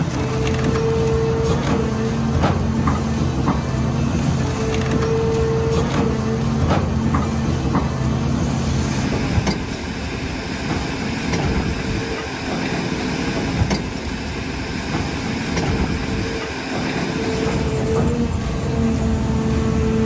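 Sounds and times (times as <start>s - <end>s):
heavy machinery engine running: 0.0s - 20.0s.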